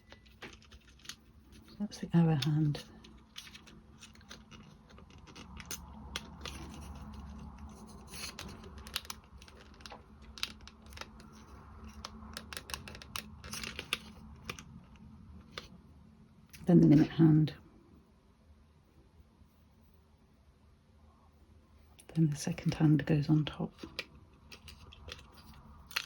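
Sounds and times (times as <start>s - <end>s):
small clicks and scratches: 0.0s - 15.9s, 21.8s - 26.0s.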